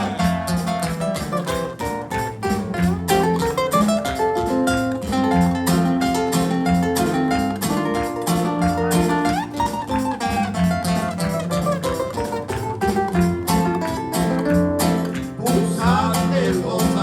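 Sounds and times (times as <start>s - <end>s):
bass line: 0.0s - 3.4s, 15.4s - 17.0s
steady beat: 0.0s - 5.9s
plucked guitars: 0.0s - 17.0s.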